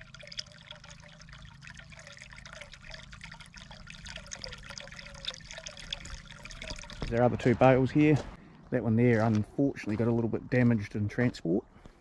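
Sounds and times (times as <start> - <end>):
water pouring into a trough: 0.0 - 7.7.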